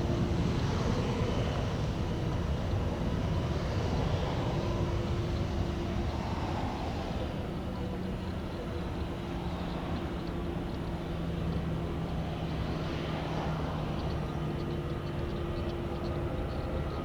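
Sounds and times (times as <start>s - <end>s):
jet engine rumble: 0.0s - 17.0s.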